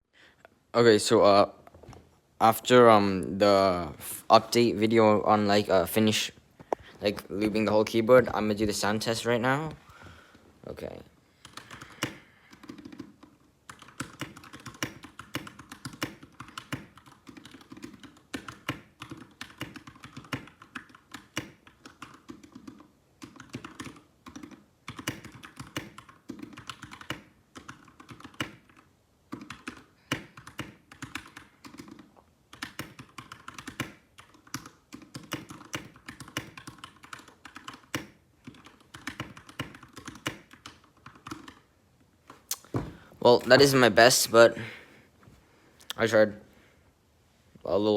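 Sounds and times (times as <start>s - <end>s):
mechanical keyboard typing: 11.4s - 41.7s.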